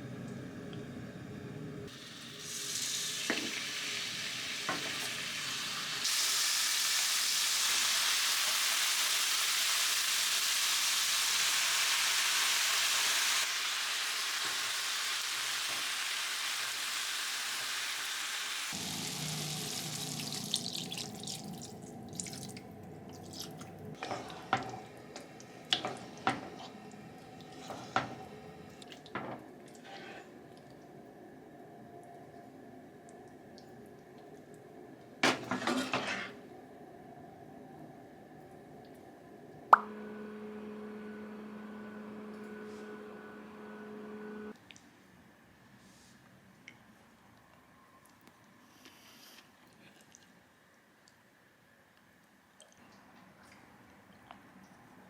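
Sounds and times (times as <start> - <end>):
steady kitchen hiss: 1.8 - 22.6.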